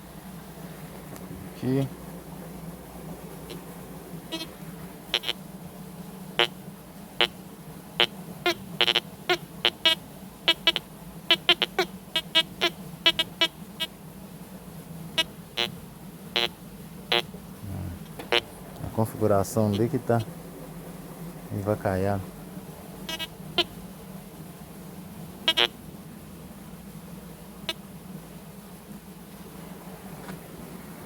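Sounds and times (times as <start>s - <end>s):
steady low hum: 0.0s - 31.0s
metal detector high beeps: 23.1s - 23.3s.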